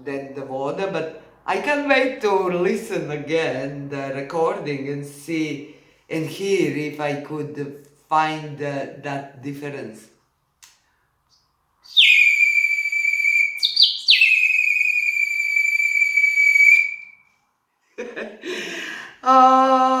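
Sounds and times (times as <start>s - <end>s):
person speaking: 0.0s - 10.1s
bird whistle blown: 11.3s - 17.3s.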